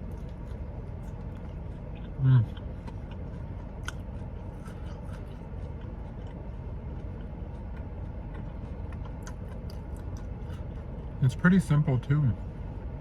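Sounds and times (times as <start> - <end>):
chewing and mouth clicks: 0.0 - 11.2.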